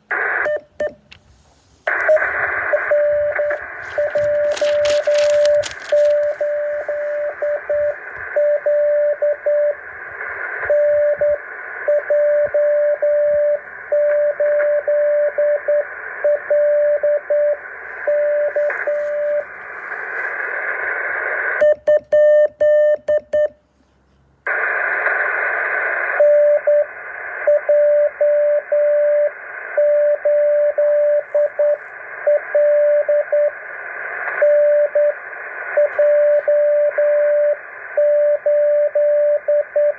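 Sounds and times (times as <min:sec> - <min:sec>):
radio receiver hiss: 0:01.0 - 0:08.4, 0:17.6 - 0:21.6, 0:30.7 - 0:32.2.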